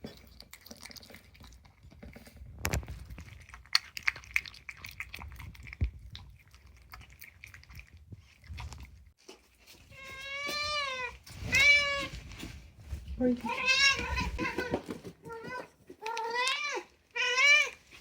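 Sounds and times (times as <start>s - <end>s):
cat crunching food: 0.0s - 9.7s
cat meowing: 9.9s - 12.2s, 13.4s - 17.8s.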